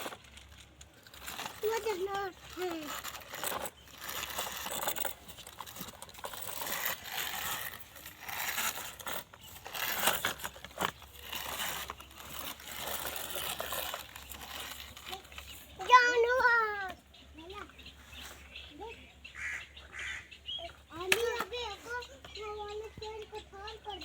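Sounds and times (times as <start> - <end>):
crinkling and rustling: 0.0 - 18.5.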